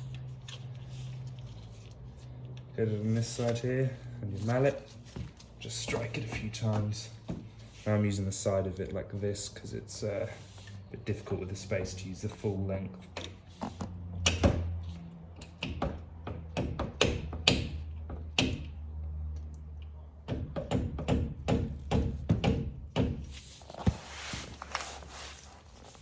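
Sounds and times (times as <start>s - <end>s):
soft rustle: 23.3s - 26.0s.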